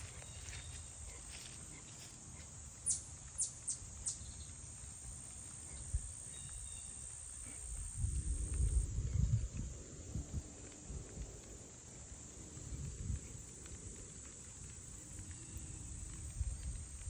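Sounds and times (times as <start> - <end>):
bird chirps: 2.8 - 4.5.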